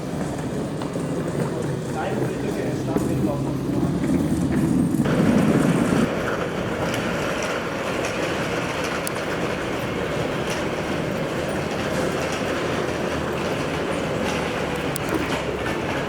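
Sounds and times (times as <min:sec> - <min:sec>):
train rumbling on tracks: 0:00.0 - 0:16.0
wheel clicks: 0:03.9 - 0:16.0.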